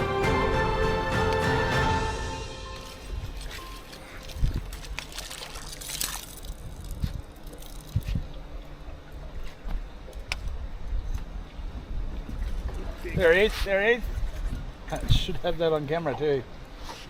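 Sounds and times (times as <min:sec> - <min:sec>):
water sloshing and trickling: 0:02.6 - 0:10.3.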